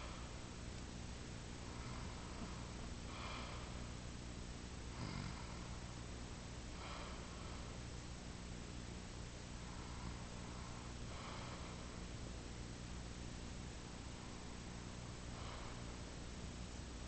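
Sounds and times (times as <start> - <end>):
boy snoring softly: 1.6 - 3.9, 4.9 - 5.9.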